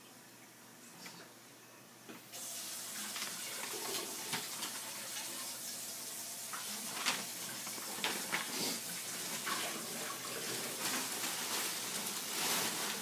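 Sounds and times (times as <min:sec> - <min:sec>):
water running from a tap: 0:02.3 - 0:12.3.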